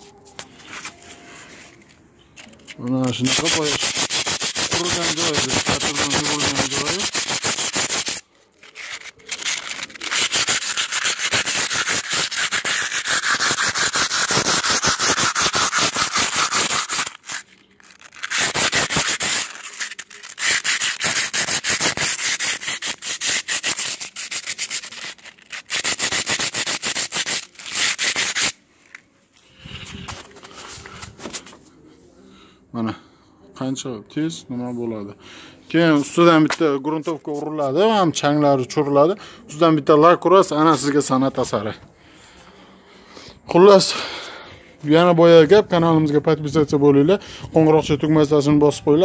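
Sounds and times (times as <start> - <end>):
sandpaper rubbing on stone: 2.4 - 28.6.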